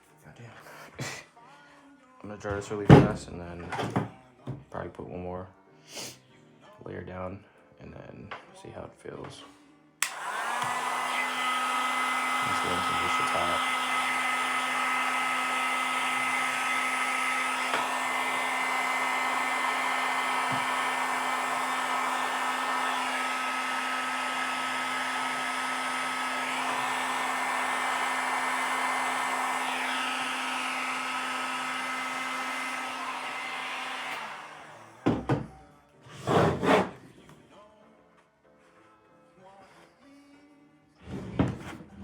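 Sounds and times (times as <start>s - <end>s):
heat gun blowing: 10.0s - 35.2s.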